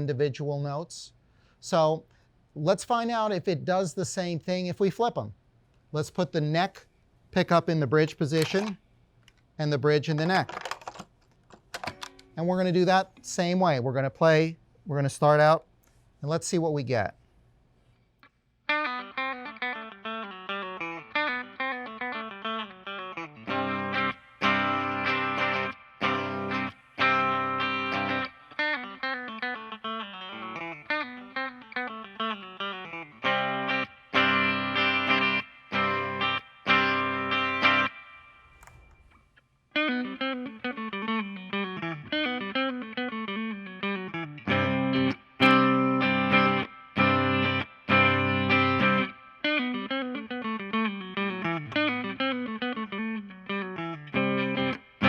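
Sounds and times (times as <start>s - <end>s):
electric guitar single-note lick: 18.7s - 39.0s, 39.8s - 55.0s
electric guitar chord ringing: 18.7s - 39.1s, 39.8s - 55.0s.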